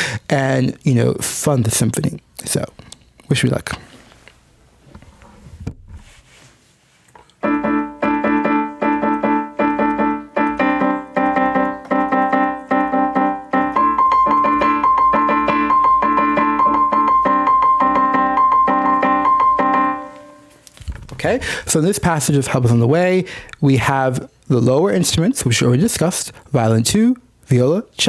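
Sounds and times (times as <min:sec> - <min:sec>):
high sustained piano note: 0:07.4 - 0:20.6
piano chords: 0:07.4 - 0:20.6.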